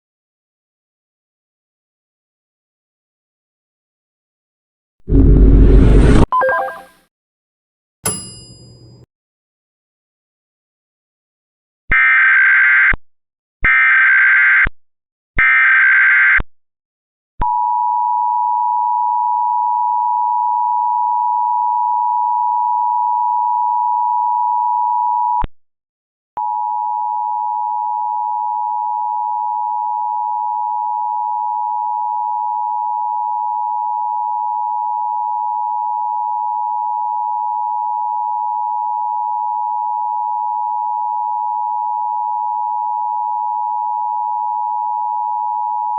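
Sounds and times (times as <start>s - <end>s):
two-tone attention signal: 6.3s - 6.9s.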